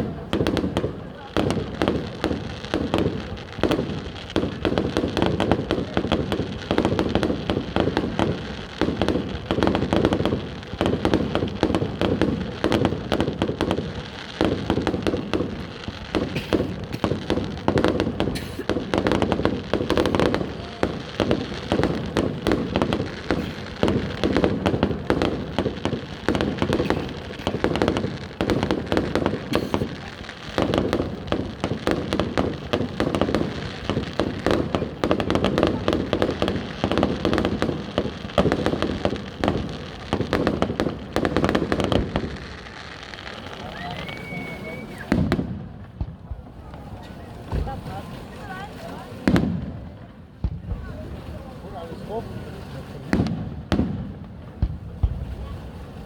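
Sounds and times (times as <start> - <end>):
fireworks bangs and crackling: 0.0 - 56.0.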